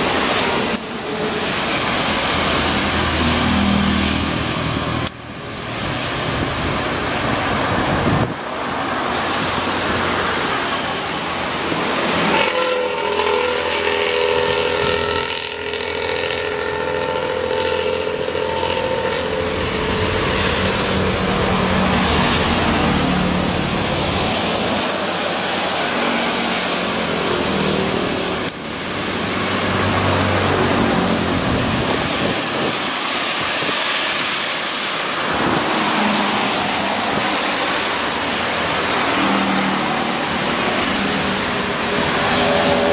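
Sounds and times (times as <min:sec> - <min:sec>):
road traffic engine and tyre noise: 0:00.0 - 0:42.9
wind rushing on microphone: 0:03.9 - 0:12.2, 0:19.0 - 0:42.9
bus multi-tone air horn: 0:12.0 - 0:23.4.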